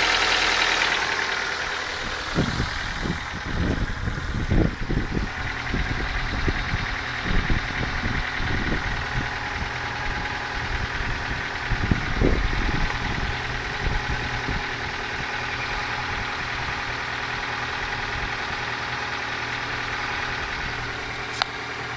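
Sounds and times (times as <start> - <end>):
car engine idling with knock: 0.0 - 21.9
low thumps: 2.0 - 15.2.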